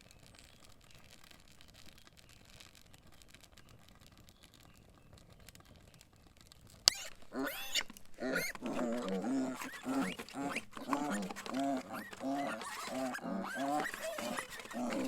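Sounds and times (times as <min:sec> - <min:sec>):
pigs grunting and squealing: 0:06.9 - 0:15.0.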